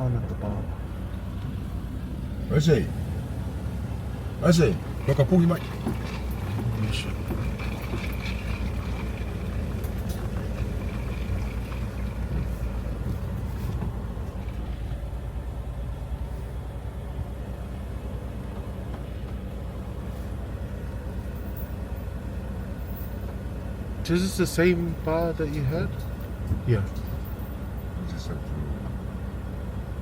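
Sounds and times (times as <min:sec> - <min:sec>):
vehicle engine and road rumble: 0:00.0 - 0:30.0.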